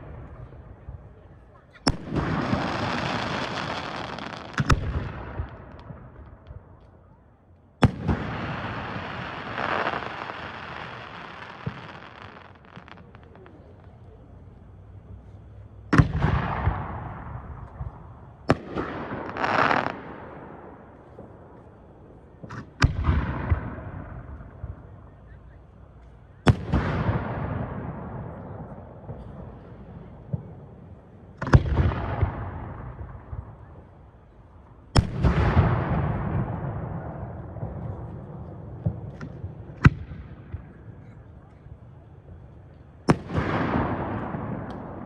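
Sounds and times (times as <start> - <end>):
fireworks bursting with bangs: 0.0 - 6.8, 7.8 - 14.0, 15.4 - 25.0, 25.9 - 34.3, 34.9 - 41.3, 42.4 - 45.0
fireworks crackle: 1.8 - 6.9, 7.9 - 14.1, 16.8 - 21.8.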